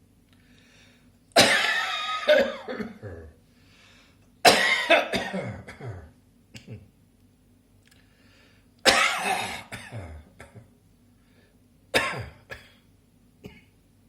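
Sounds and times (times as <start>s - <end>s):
person coughing: 1.4s - 3.4s, 4.5s - 6.9s, 8.9s - 10.7s, 12.0s - 13.7s.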